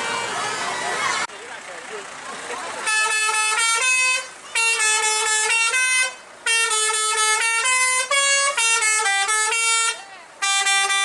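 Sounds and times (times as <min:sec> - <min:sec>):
musical bus air horn: 0:00.0 - 0:00.5, 0:02.8 - 0:11.0.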